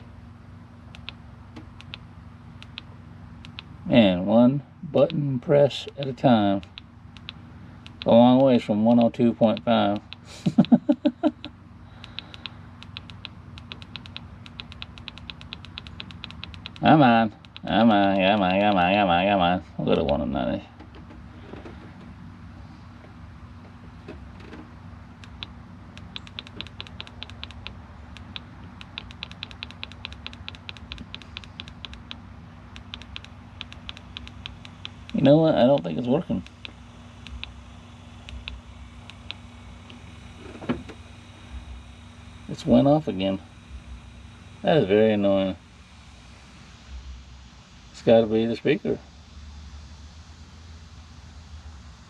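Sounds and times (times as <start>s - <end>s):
steady low hum: 0.0s - 52.0s
rapid button clicking: 12.0s - 18.9s, 25.2s - 32.2s, 32.8s - 37.6s.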